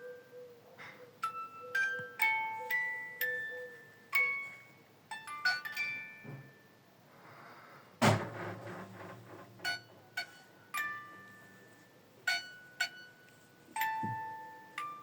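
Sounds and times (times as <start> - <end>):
glockenspiel-like mallet music: 1.2 - 6.8, 9.6 - 15.0
loud thud with low rumble: 8.0 - 8.8.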